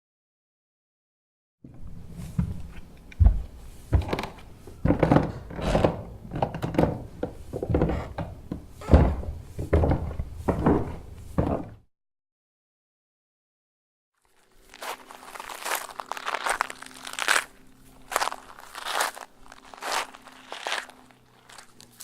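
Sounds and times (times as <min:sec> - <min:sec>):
heavy thuds and knocks: 0:06.7 - 0:11.8.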